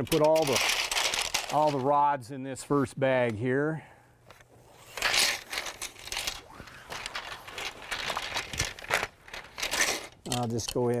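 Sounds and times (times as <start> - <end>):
packing sleeve rustling: 0.1 - 1.9, 4.7 - 11.0.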